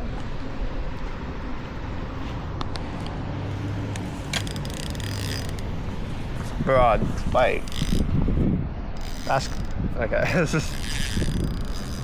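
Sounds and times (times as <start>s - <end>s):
distant engine humming: 0.0s - 12.0s
outdoor background noise: 0.0s - 12.0s.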